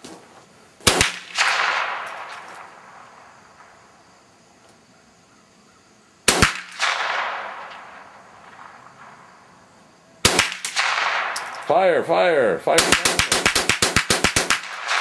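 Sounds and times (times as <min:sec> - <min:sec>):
rifle shots: 0:00.8 - 0:03.8, 0:06.3 - 0:09.6, 0:10.2 - 0:11.7, 0:12.8 - 0:15.0.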